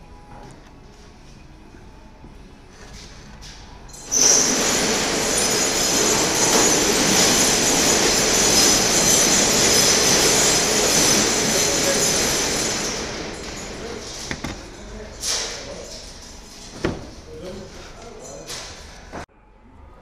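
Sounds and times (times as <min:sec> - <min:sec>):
machine hiss with high whine: 0:03.9 - 0:15.7.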